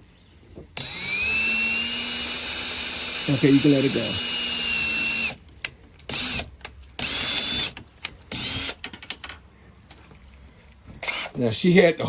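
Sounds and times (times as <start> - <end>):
power drill driving a screw: 0.8 - 5.4, 6.1 - 8.8.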